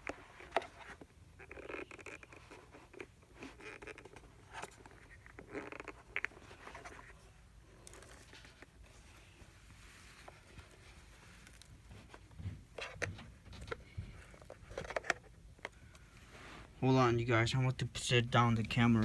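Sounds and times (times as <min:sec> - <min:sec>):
rustling: 0:00.0 - 0:16.9
plastic clicks and scraping: 0:11.4 - 0:16.0.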